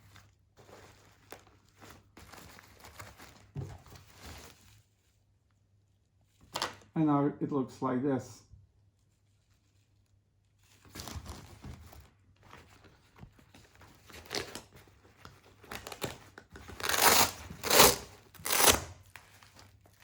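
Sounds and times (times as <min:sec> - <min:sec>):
nylon gear rustling and scraping: 0:00.0 - 0:05.3, 0:09.3 - 0:20.0
velcro ripping: 0:15.7 - 0:19.2.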